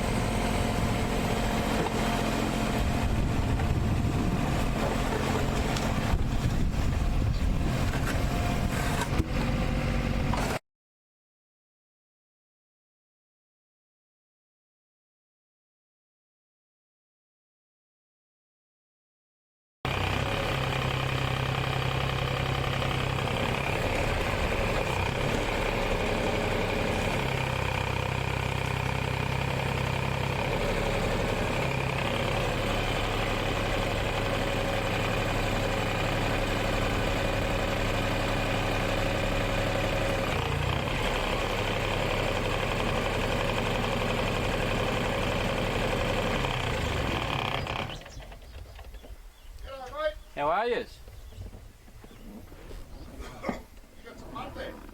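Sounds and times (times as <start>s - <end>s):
excavator diesel engine running: 0.0s - 10.6s, 19.9s - 49.1s.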